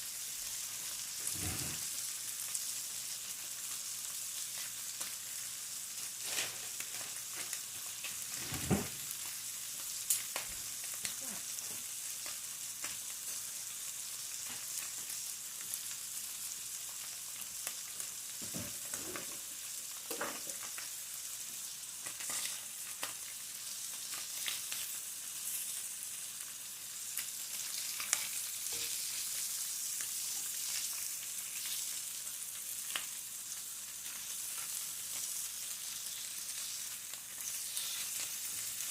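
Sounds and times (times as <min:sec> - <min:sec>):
food sizzling in a pan: 0:00.0 - 0:38.9.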